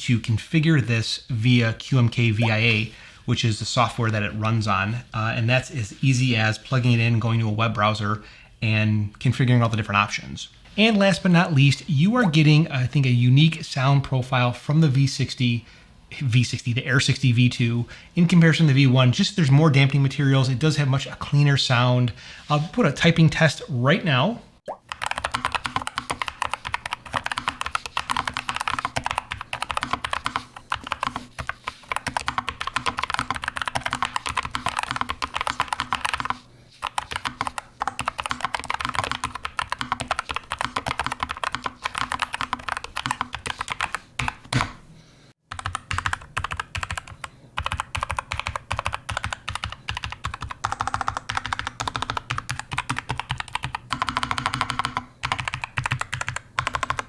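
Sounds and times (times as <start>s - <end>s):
fast typing on mechanical keyboard: 24.9s - 44.8s, 45.5s - 57.0s.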